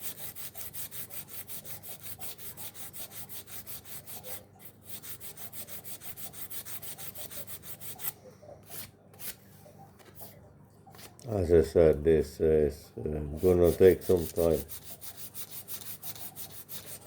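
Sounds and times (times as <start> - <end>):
sandpaper rasping on wood: 0.0 - 8.1, 13.4 - 17.0.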